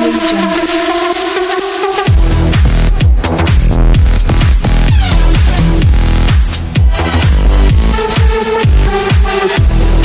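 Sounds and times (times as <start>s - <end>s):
electronic dance music: 0.0s - 10.0s
kick drum bass thumps: 2.0s - 10.0s.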